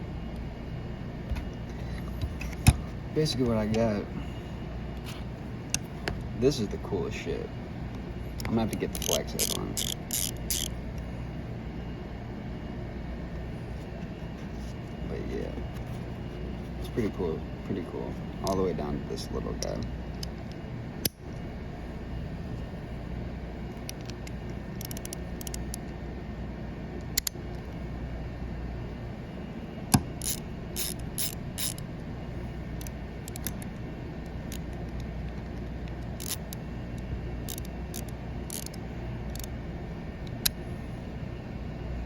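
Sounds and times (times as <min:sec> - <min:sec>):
hand ratchet clicking: 0:08.4 - 0:10.7, 0:24.8 - 0:25.7, 0:30.1 - 0:31.8, 0:36.2 - 0:36.5, 0:37.4 - 0:39.5.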